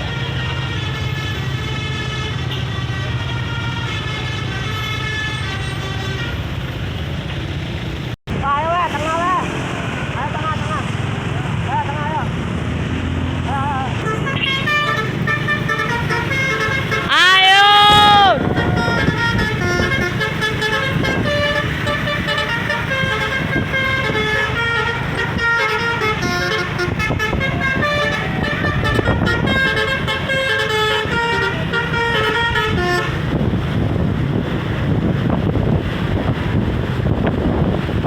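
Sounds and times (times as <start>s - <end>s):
multi-tone bus horn melody: 0.0s - 6.7s, 14.0s - 33.5s.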